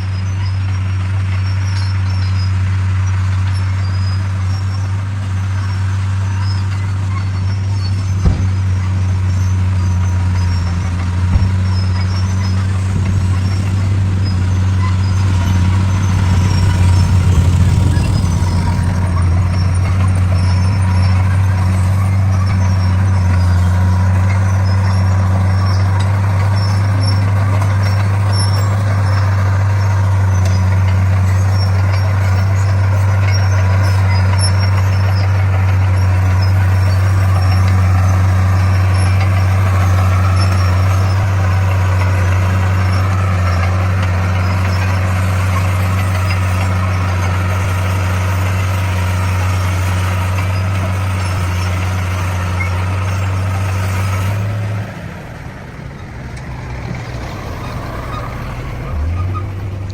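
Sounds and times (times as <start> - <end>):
bulldozer diesel engine running: 0.0 - 59.9.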